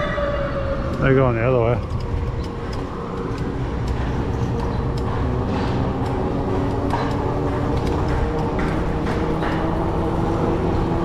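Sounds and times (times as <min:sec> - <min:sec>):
wind rumble: 0:00.0 - 0:11.0
bike tyres rolling: 0:01.8 - 0:11.0.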